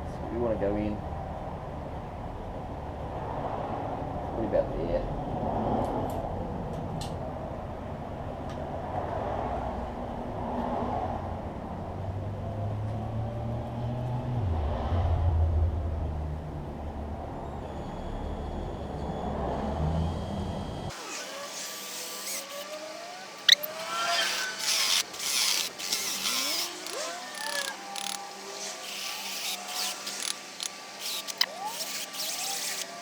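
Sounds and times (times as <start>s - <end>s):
electric drill boring: 20.9s - 33.0s
squeaky scraping: 21.8s - 33.0s
clicks: 23.4s - 33.0s.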